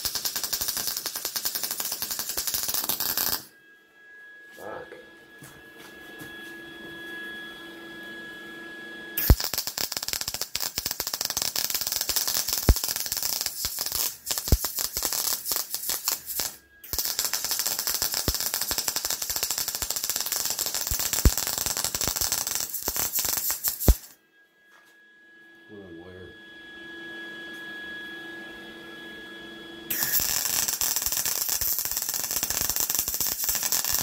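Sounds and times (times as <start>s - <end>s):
welder arc crackling and popping: 0.0s - 3.5s, 9.2s - 24.1s, 29.9s - 34.0s.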